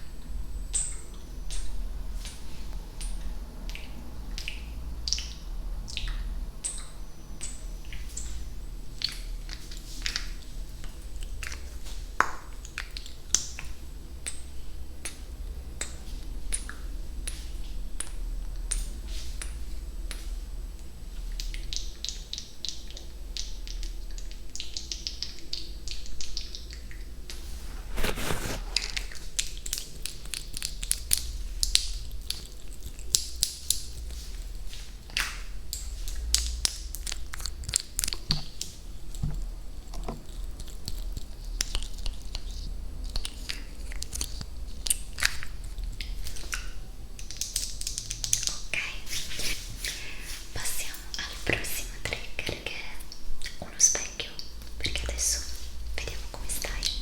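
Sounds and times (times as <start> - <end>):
hissing rustle: 27.4 - 29.2.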